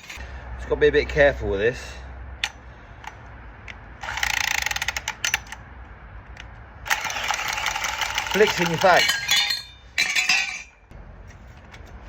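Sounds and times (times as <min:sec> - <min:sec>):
pipe cutter whirring: 0:06.9 - 0:09.8.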